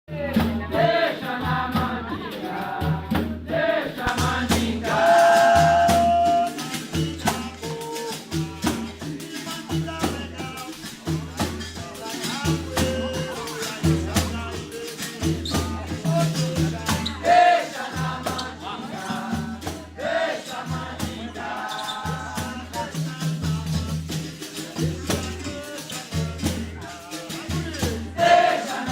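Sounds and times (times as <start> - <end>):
jingling tambourine-like percussion: 0.1 - 28.9
voices singing: 0.1 - 28.9
low drum beat: 2.8 - 17.3
person singing: 4.0 - 17.4.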